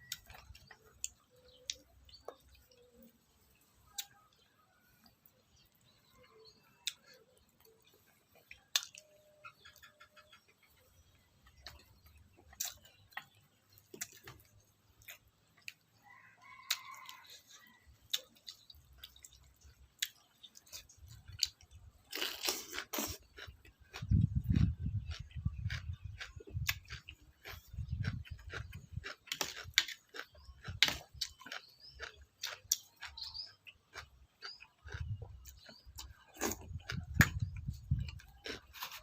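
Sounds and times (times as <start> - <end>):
crunching rustle: 16.8 - 39.0.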